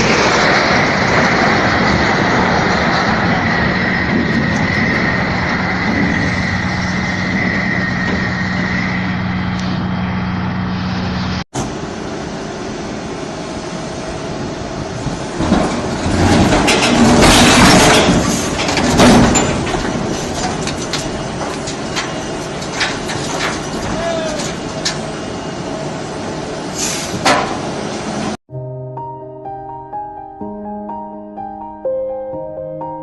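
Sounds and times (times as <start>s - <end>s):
rumble with clattering and knocking: 0.0s - 11.9s, 14.0s - 28.4s
heavy vehicle engine running: 0.0s - 28.4s.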